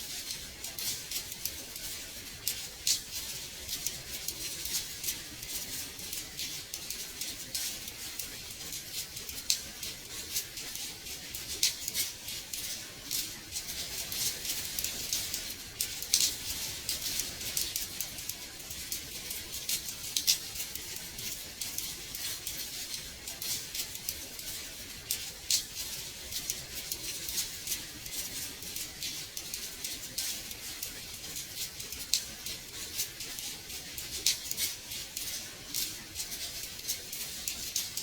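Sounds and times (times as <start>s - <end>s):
rain on a window: 0.0s - 38.0s.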